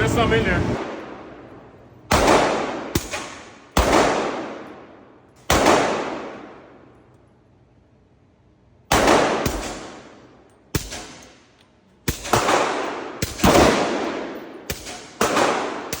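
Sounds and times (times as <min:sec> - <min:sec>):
suppressed rifle shots echoing: 0:05.4 - 0:06.7, 0:12.1 - 0:16.0.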